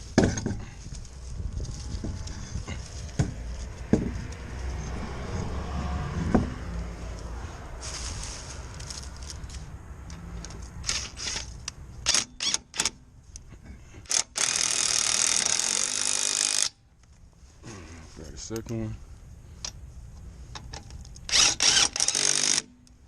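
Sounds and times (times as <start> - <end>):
low rumble: 0.7 - 11.0
impact wrench running: 14.0 - 16.8, 21.3 - 22.7.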